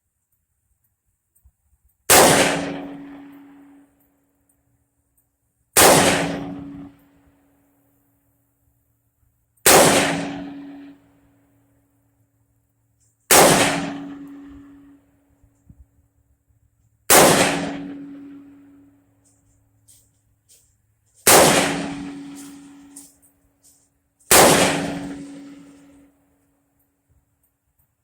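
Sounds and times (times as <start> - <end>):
gunshots with ringing decay: 2.1 - 3.8, 5.8 - 7.1, 9.7 - 11.0, 13.3 - 15.0, 17.1 - 18.9, 21.2 - 23.1, 24.3 - 26.2.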